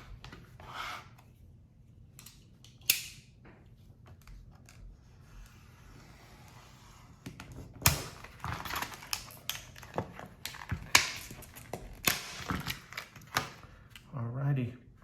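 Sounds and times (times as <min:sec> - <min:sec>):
packaging clicking and crackling: 0:07.9 - 0:13.7.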